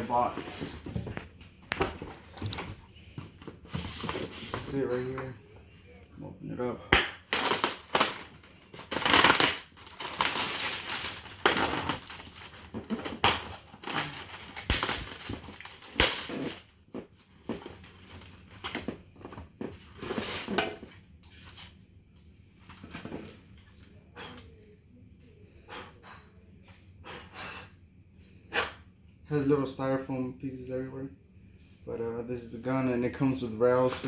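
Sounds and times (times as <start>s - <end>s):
styrofoam packing rustling: 7.2s - 21.7s.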